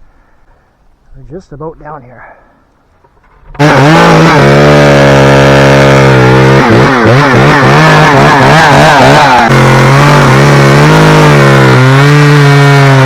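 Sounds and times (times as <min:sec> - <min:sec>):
chainsaw running: 0:03.2 - 0:13.0.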